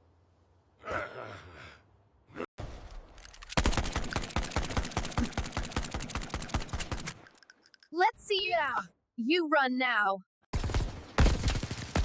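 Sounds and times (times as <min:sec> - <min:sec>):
cartoon machine-gun fire: 0:03.6 - 0:07.1.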